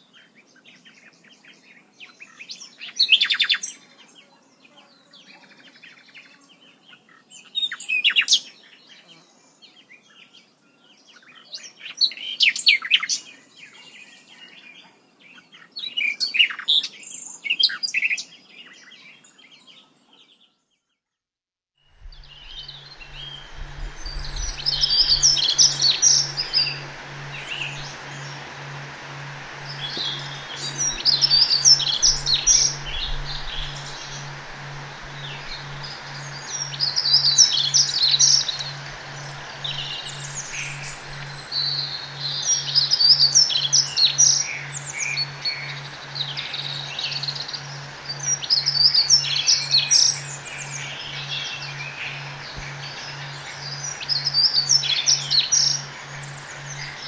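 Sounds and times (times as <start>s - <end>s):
steady hiss: 21.9s - 57.0s
birds chirping: 22.0s - 57.0s
low pulsing hum: 22.0s - 57.0s.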